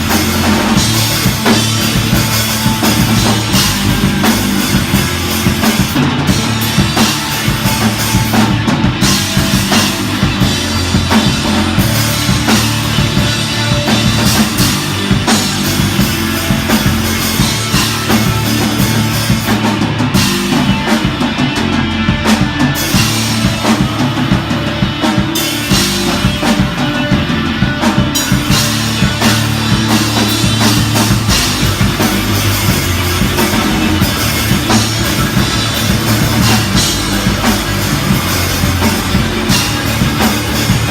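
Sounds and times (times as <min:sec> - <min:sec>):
drum kit: 0:00.0 - 0:40.9
rock band playing live: 0:00.0 - 0:40.9.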